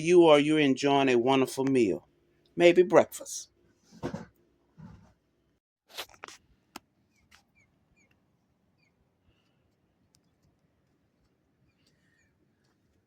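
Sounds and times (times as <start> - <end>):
small bird chirping: 7.1 - 9.0, 11.6 - 12.4.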